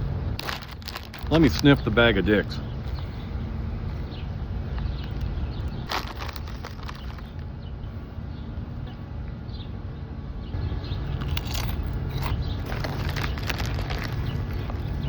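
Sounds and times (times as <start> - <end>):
low steady hum: 0.0 - 15.0
potato chips crunching: 0.4 - 1.8, 5.9 - 7.4, 11.2 - 15.0.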